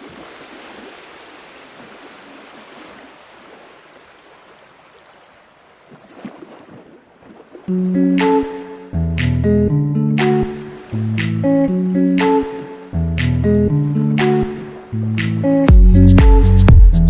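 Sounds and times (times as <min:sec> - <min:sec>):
water splashes: 0:00.0 - 0:08.8, 0:10.2 - 0:11.6
sea water rushing: 0:00.0 - 0:09.0, 0:10.2 - 0:15.6
music: 0:07.7 - 0:17.0.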